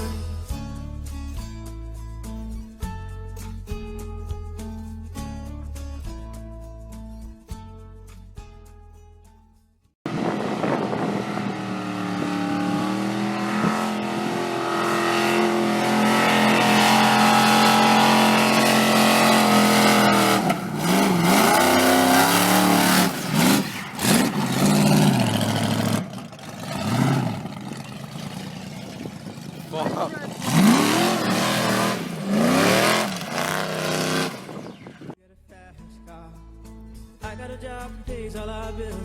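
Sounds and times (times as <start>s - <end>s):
car engine revving: 10.1s - 35.2s.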